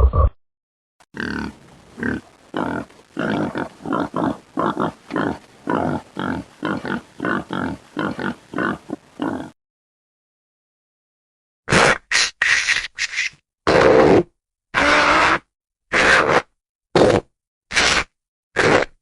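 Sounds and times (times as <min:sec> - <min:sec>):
boar grunting: 0:01.2 - 0:09.6.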